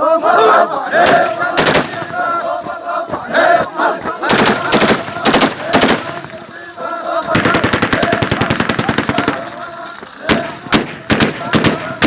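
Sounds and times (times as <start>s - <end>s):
automatic rifle gunfire: 1.0s - 2.2s, 4.2s - 6.5s, 7.3s - 12.0s.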